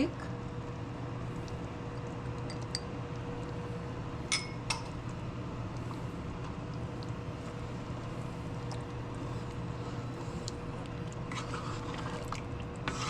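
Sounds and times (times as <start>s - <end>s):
steady hum: 0.0s - 13.0s
utensil clinking against pot: 4.3s - 4.9s.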